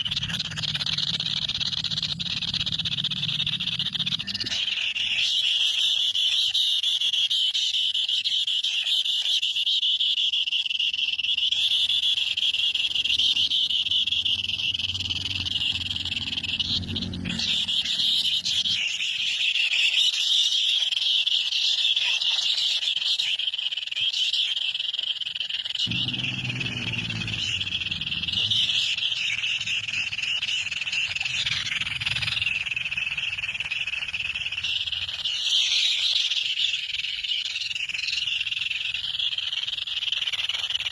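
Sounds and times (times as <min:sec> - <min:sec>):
chorus of high-pitched animal calls: 0:00.0 - 0:40.9
lower pitched sound: 0:11.6 - 0:19.0, 0:25.9 - 0:33.0.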